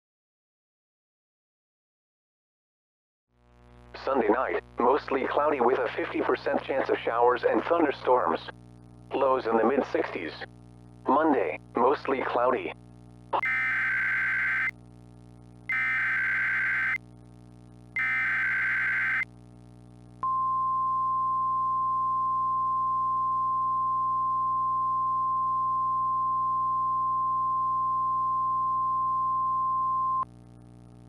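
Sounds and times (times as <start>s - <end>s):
harsh digital data bursts: 13.4s - 14.7s, 15.7s - 17.0s, 18.0s - 19.2s
steady high alert tone: 13.4s - 14.7s, 15.7s - 17.0s, 18.0s - 19.2s.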